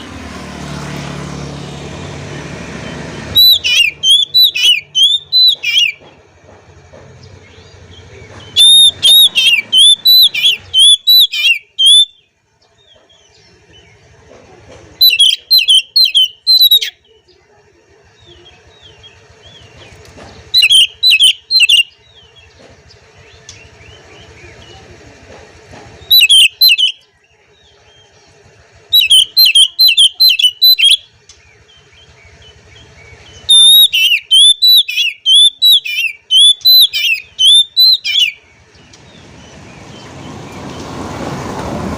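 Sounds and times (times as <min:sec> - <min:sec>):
bird singing chattering whistles: 0:02.8 - 0:06.2, 0:07.2 - 0:14.0, 0:15.0 - 0:17.3, 0:18.2 - 0:24.9, 0:26.0 - 0:40.0.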